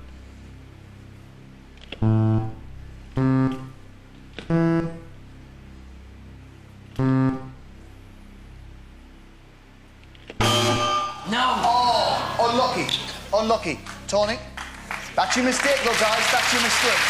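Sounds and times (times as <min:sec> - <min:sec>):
quiet music bed: 0:00.0 - 0:17.0
electronic keyboard notes: 0:01.9 - 0:05.4, 0:06.9 - 0:08.0, 0:10.4 - 0:11.5.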